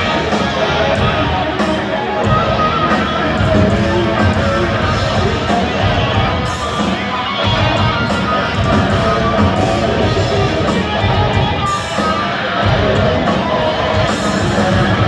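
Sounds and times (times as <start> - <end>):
bass: 0.0 - 15.0
distorted electric guitars: 0.0 - 15.0
drums: 0.0 - 15.0.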